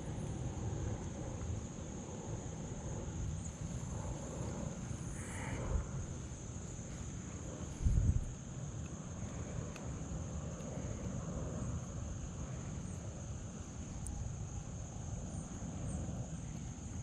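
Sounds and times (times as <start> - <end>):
faint high-pitched whine: 0.0 - 17.0
wind rumble on microphone: 0.0 - 17.0
faint ticks: 8.8 - 11.2, 14.0 - 14.2.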